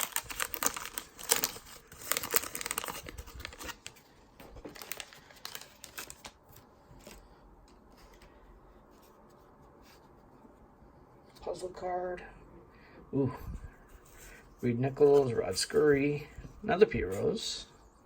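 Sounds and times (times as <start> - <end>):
wax-paper wrapper tearing and crinkling: 0.0 - 7.2
light paper rustling: 0.0 - 10.6.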